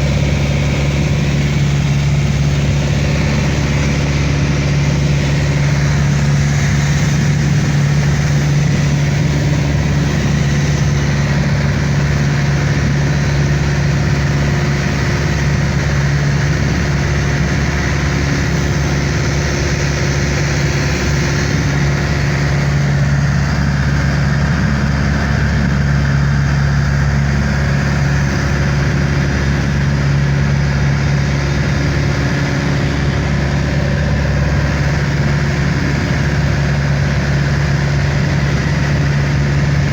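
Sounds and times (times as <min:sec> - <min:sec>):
airliner engines drone in cabin: 0:00.0 - 0:39.9
rushing air: 0:00.0 - 0:39.9.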